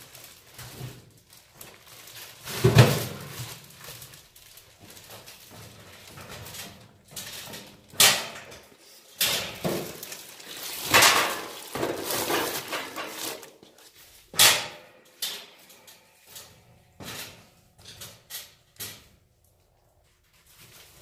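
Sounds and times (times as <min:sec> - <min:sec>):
bags rustling: 0:00.0 - 0:07.7, 0:08.8 - 0:14.3.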